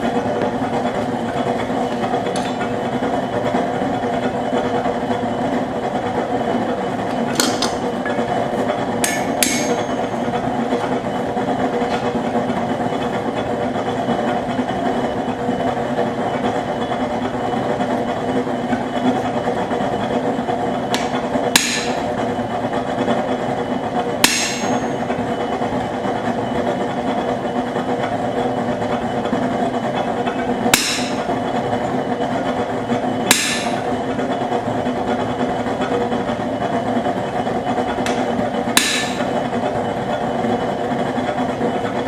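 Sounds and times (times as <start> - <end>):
propane forge burner roaring: 0.0 - 42.0
hammer ringing on anvil: 9.0 - 10.1, 20.9 - 22.1, 24.2 - 25.0, 30.7 - 31.3, 33.3 - 33.9, 38.8 - 39.3.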